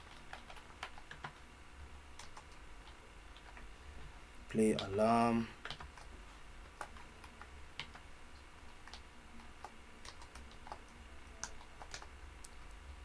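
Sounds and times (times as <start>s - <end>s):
computer keyboard keystrokes: 0.0s - 1.4s, 2.2s - 3.7s, 5.6s - 6.1s, 6.7s - 8.1s, 8.7s - 12.7s.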